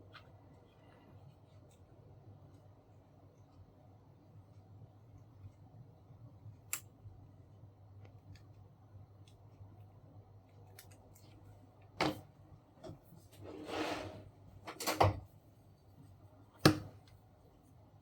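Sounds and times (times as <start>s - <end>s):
rustling scrape: 13.2s - 14.4s.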